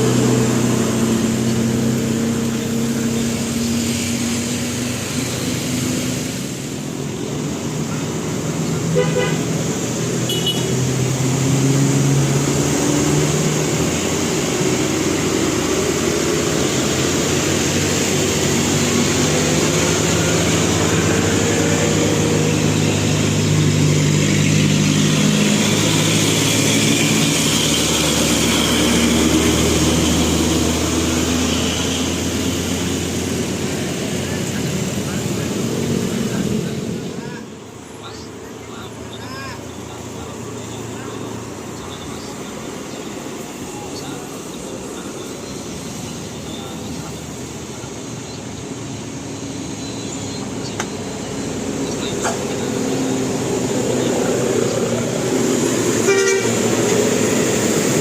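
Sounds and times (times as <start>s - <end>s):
road traffic noise: 0.0s - 58.0s
bus musical horn playing a tune: 8.9s - 9.5s, 10.3s - 10.8s, 56.0s - 56.9s.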